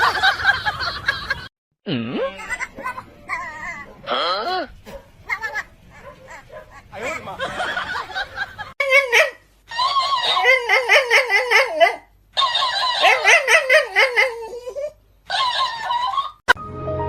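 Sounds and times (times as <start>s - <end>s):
high-pitched giggling laughter: 2.2s - 3.9s, 5.3s - 14.6s.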